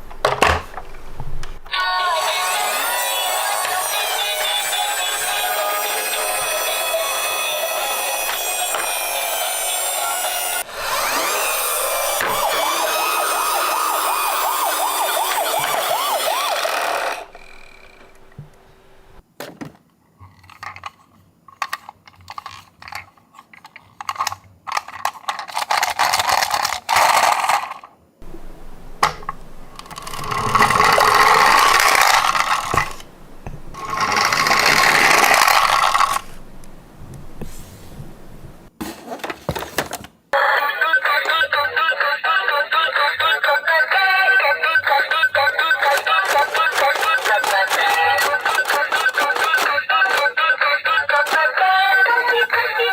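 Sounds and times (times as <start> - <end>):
toy cars rolling: 1.6 - 18.6, 20.2 - 28.0, 29.0 - 36.8, 44.7 - 52.9
toy cars clicking and rattling: 2.8 - 18.2, 20.2 - 28.0, 29.1 - 33.1, 33.8 - 36.4, 45.0 - 52.0.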